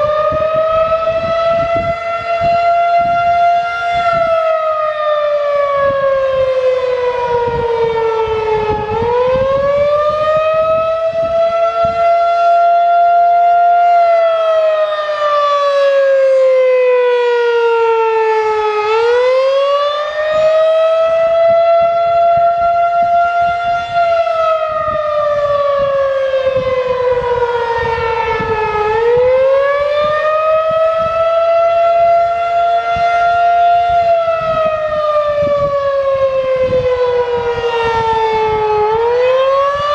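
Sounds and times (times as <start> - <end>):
outdoor warning siren wailing: 0.0 - 39.9.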